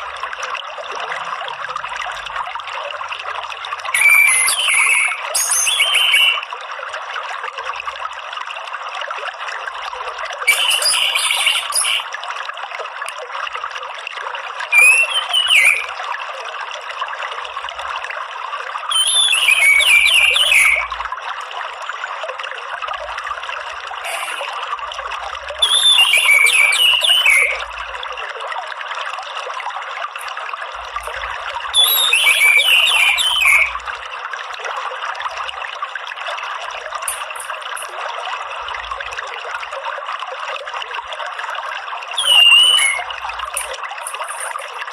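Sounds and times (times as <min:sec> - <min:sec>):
water trickling: 0:00.0 - 0:44.9
thrush twittering song: 0:04.0 - 0:06.4, 0:10.5 - 0:12.1, 0:14.7 - 0:16.0, 0:18.9 - 0:21.0, 0:24.0 - 0:24.6, 0:25.6 - 0:27.7, 0:30.9 - 0:33.9, 0:42.2 - 0:44.8.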